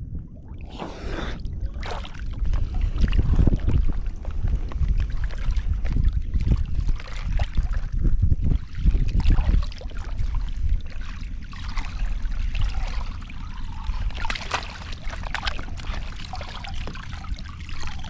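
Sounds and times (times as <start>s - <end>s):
wind rumbling on microphone: 0.0s - 18.0s
water splashing and trickling: 0.4s - 18.0s
sharp water splashes: 11.5s - 18.0s.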